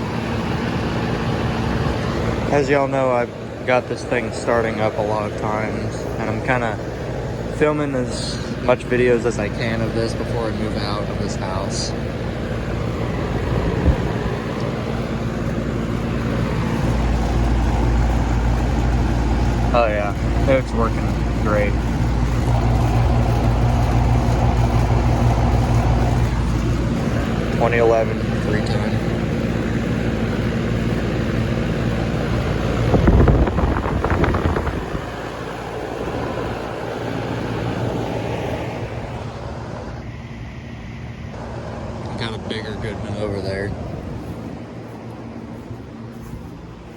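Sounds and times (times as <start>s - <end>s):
air conditioner humming: 0.0s - 46.9s
outdoor fan rushing: 0.0s - 46.9s
wind noise on microphone: 12.7s - 14.6s, 32.4s - 36.6s.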